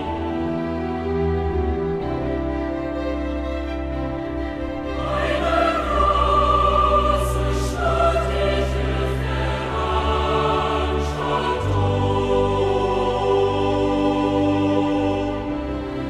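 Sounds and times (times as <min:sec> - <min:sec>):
sustained orchestral backing: 0:00.0 - 0:16.0
choir singing held notes: 0:04.9 - 0:16.0.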